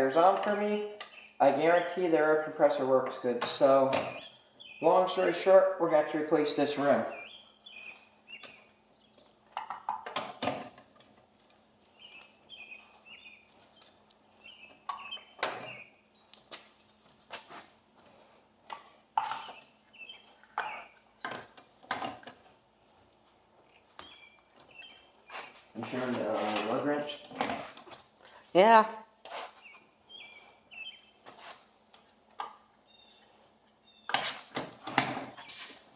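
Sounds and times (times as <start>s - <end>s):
small birds chirping: 0.7s - 2.2s, 3.6s - 5.6s, 6.4s - 9.5s, 11.4s - 27.4s, 29.5s - 34.3s.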